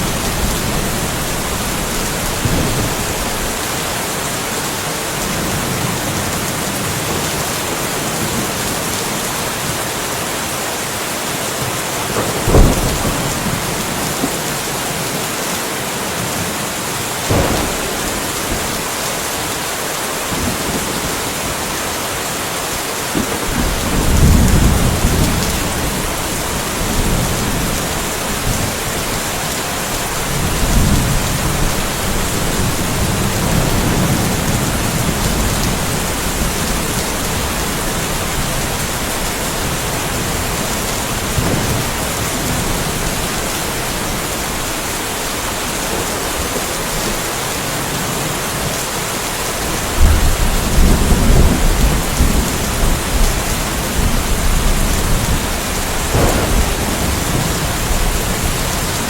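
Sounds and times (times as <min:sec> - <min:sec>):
thunder rumbling: 0:00.0 - 0:03.8, 0:12.1 - 0:15.2, 0:17.2 - 0:21.8, 0:23.1 - 0:47.2, 0:49.9 - 0:59.0
steady rain falling: 0:00.0 - 0:59.0.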